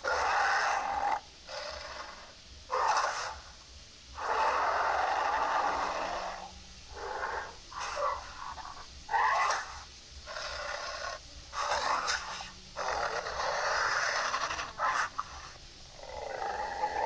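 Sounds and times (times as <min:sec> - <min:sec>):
creature snorts and hissing growls: 0:04.2 - 0:17.0.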